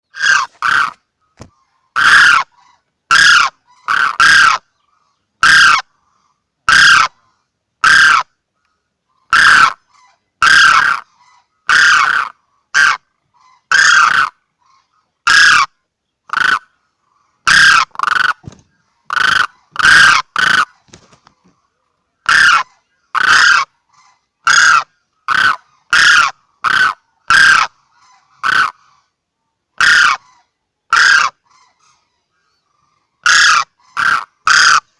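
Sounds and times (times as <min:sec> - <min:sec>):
crane honking calls: 0:02.0 - 0:04.6, 0:05.4 - 0:08.3, 0:09.2 - 0:16.8, 0:17.4 - 0:20.8, 0:22.2 - 0:29.1, 0:29.8 - 0:32.0, 0:32.8 - 0:34.9.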